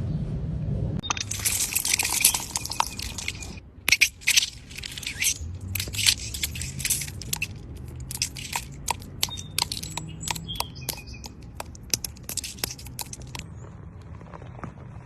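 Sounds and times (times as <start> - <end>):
crunching and crackling clicks: 1.0 - 14.9.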